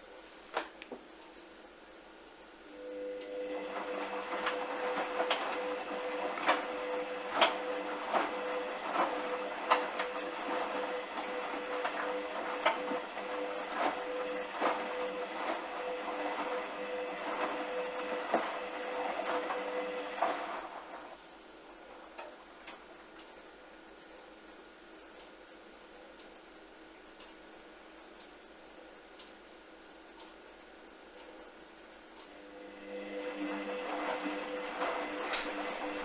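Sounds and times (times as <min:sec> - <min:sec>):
washing machine motor hum: 0:02.6 - 0:24.5, 0:31.1 - 0:36.0.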